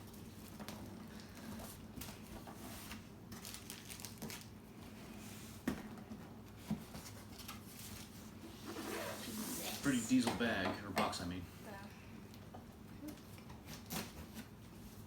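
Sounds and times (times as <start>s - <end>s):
packaging crinkling and tearing: 3.3s - 4.6s.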